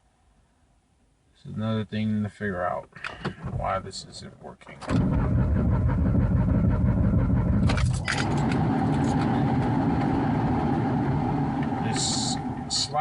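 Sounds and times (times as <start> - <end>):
car engine cranking: 4.8 - 13.0.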